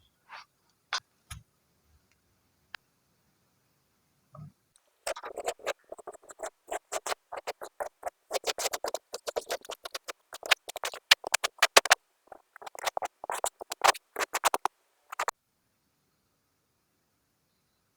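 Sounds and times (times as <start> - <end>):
kinetic sand crunching: 5.1 - 15.3.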